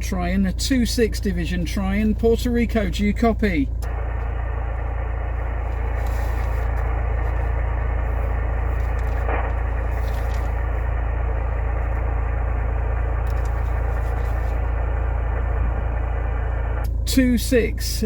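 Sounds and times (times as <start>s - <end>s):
steady low hum: 0.0s - 18.0s
radio static hiss: 2.8s - 18.0s.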